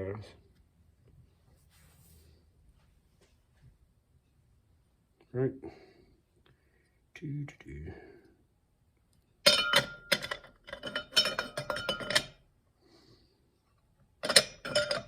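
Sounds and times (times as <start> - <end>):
steel parts clinking: 9.5 - 12.4, 14.2 - 15.0.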